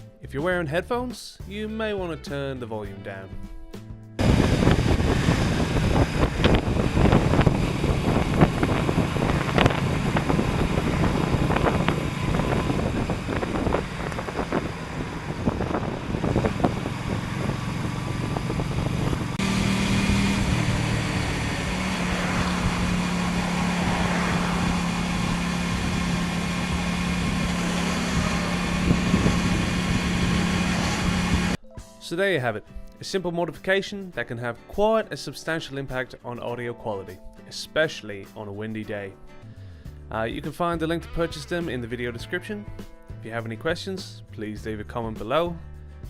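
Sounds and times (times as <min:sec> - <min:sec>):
motorcycle engine hum: 0:04.2 - 0:31.6
wind buffeting microphone: 0:04.2 - 0:31.6.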